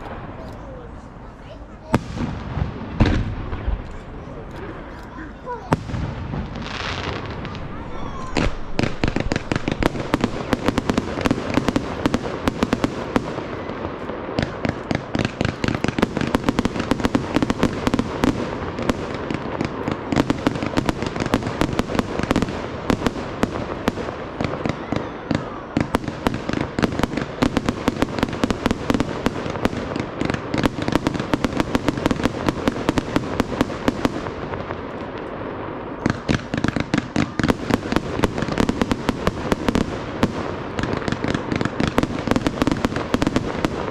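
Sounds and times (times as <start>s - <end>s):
fireworks bangs and bursts: 0.0s - 43.9s.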